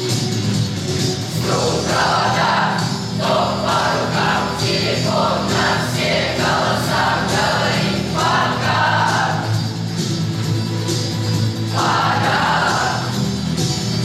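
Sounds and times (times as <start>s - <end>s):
held low accompaniment notes: 1.0s - 14.0s
choir singing: 1.2s - 9.6s, 11.7s - 13.3s.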